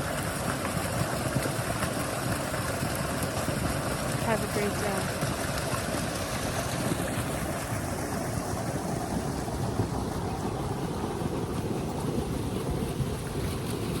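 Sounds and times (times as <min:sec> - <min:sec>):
brook running over rocks: 0:00.0 - 0:14.0.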